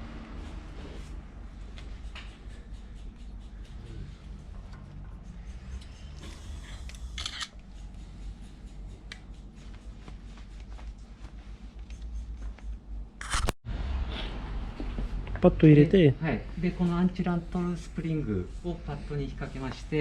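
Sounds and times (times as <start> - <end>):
low hum: 0.0 - 20.0
metal clicks and scrapes: 4.6 - 7.7, 13.2 - 13.6.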